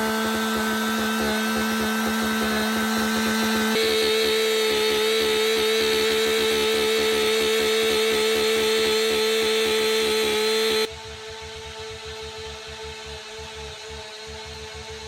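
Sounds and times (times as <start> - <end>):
chainsaw running at high speed: 0.0 - 10.9.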